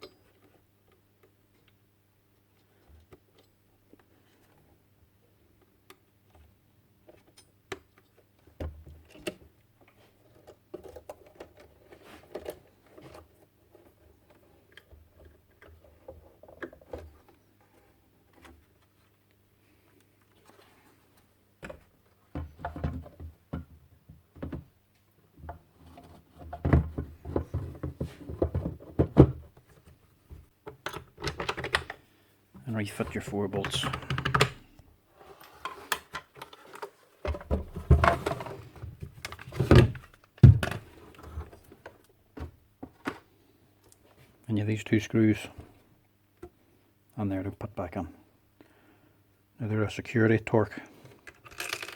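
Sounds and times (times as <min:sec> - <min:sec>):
radio parts clicking and rustling: 0:30.6 - 0:32.0, 0:32.9 - 0:34.8, 0:35.6 - 0:42.1, 0:51.1 - 0:51.9.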